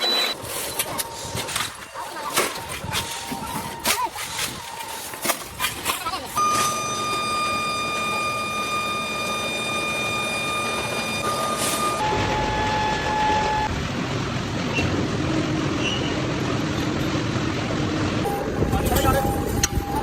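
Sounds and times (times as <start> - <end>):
machinery whine: 6.4 - 20.0.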